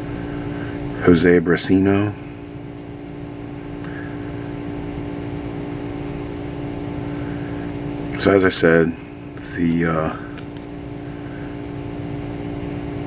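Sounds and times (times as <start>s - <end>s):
machine humming drone: 0.0s - 13.0s.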